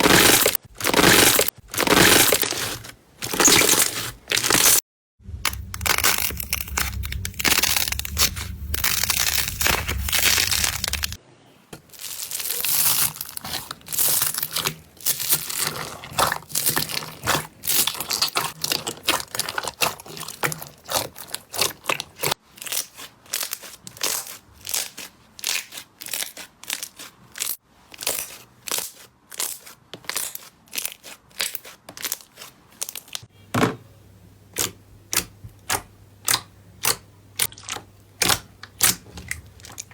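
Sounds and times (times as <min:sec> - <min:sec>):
slime crackling and crunching: 0:00.0 - 0:11.2, 0:11.8 - 0:33.3, 0:34.6 - 0:39.9
sharp clicks and pops: 0:05.4 - 0:11.2.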